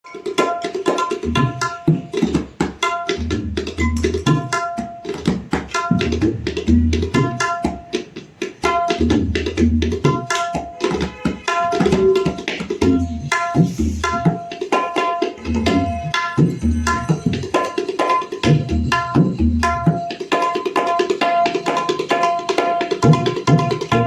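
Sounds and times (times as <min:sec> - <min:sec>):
ringing tabla strokes: 0:00.1 - 0:24.0
deep bending bass drum strokes: 0:15.4 - 0:17.5.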